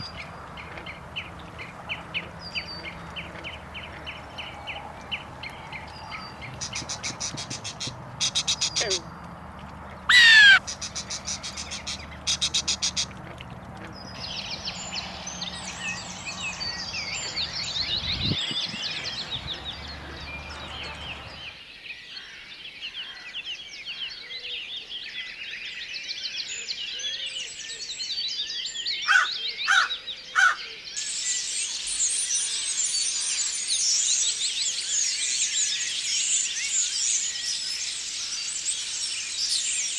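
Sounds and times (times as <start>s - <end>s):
loud falling bird whistle: 10.1s - 10.6s
chorus of high bird chirps: 10.1s - 12.9s, 14.2s - 21.6s, 28.6s - 39.9s
bird rattling calls: 10.1s - 13.0s.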